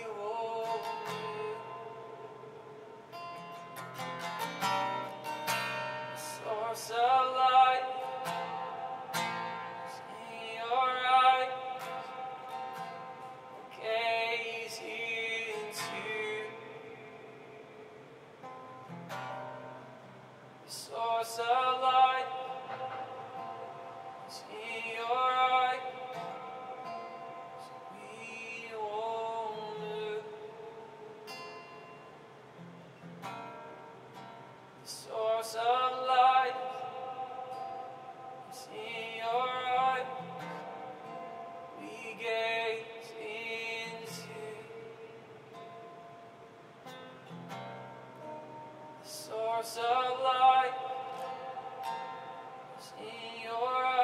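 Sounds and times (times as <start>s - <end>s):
wordless singing with vibrato: 0.0s - 18.6s, 20.5s - 31.4s, 34.8s - 46.8s, 49.0s - 54.0s
acoustic guitar strumming: 0.0s - 54.0s
person singing softly: 20.7s - 31.1s, 34.8s - 45.4s.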